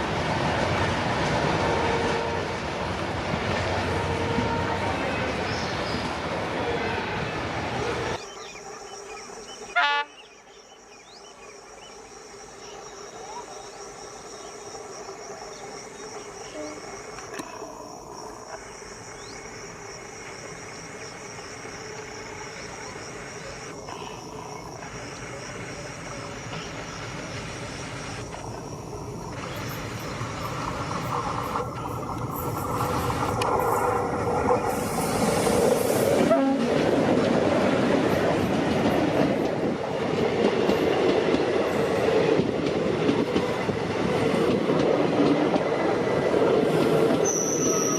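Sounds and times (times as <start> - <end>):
train rumble and wheel noise: 0.0 - 47.9
train horn toot: 1.4 - 2.8, 3.8 - 5.5, 9.7 - 10.3, 36.2 - 36.8, 47.2 - 47.9.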